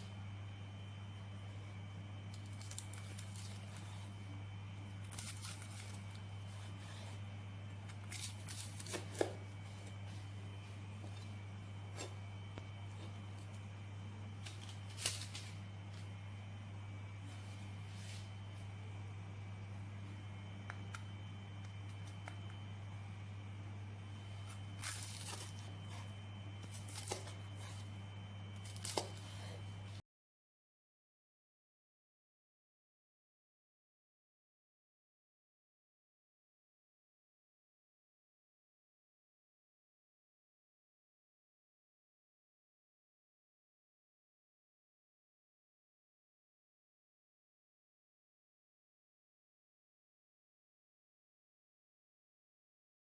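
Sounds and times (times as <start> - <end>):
steady low hum: 0.0 - 30.0
crackly crunching: 2.3 - 16.2, 24.2 - 29.9.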